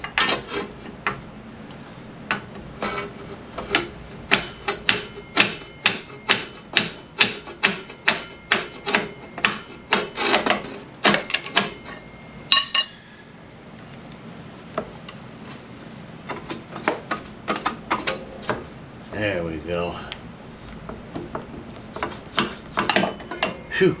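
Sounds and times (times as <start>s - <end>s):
pry bar scraping metal: 0.0s - 1.2s, 2.3s - 13.2s, 21.9s - 23.6s.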